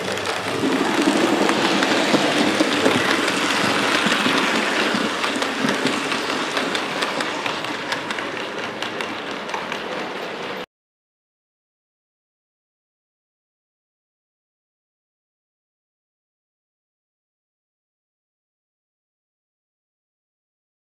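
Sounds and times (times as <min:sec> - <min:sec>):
model train wheels clicking on rails: 0:00.0 - 0:10.7.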